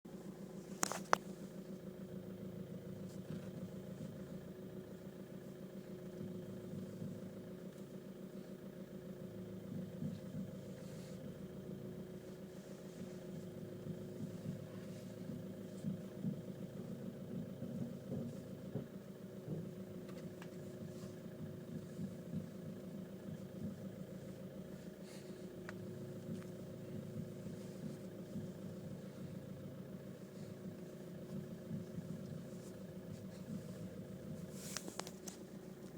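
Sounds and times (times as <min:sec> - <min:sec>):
car engine idling: 0:00.1 - 0:35.9
knocks from steering: 0:13.2 - 0:24.2.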